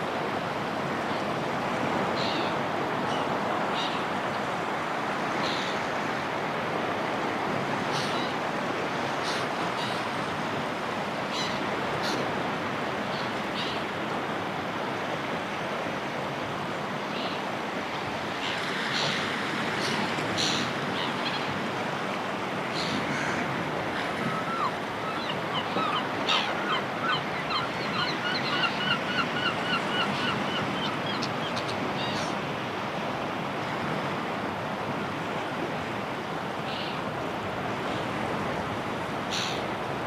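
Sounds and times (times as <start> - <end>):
waves washing on shore: 0.0 - 40.0
seagull calls: 24.0 - 32.3.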